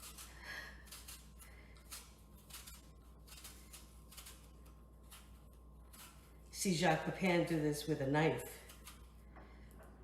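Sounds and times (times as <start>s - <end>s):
knife scraping apple peel: 0.0s - 9.3s.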